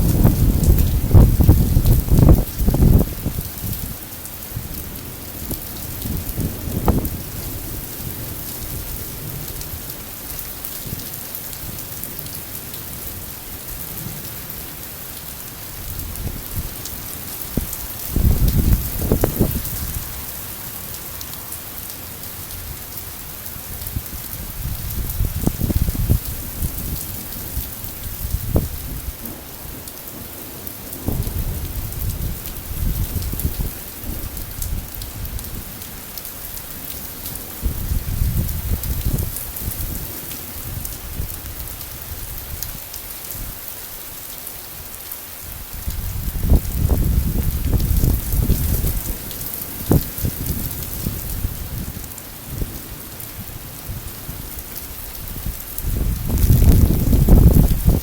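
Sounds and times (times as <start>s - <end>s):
thunder rumbling: 0.0s - 4.0s, 15.8s - 20.2s, 24.5s - 35.8s, 55.4s - 58.0s
heavy rain falling: 0.0s - 58.0s.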